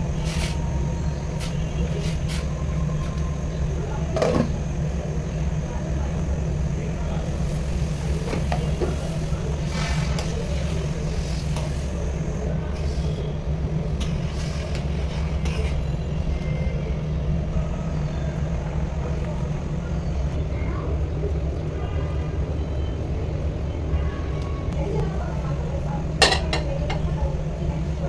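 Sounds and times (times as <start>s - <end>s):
low droning hum: 0.0s - 11.3s.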